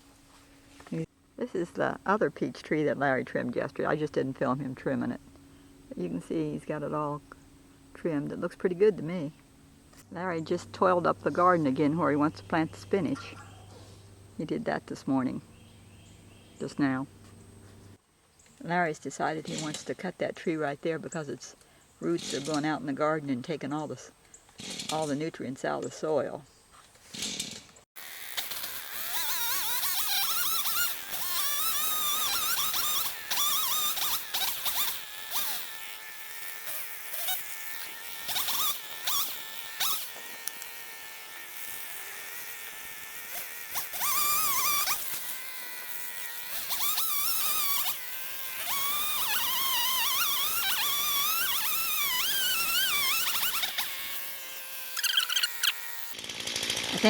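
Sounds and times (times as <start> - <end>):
chainsaw cutting wood: 27.0 - 57.0.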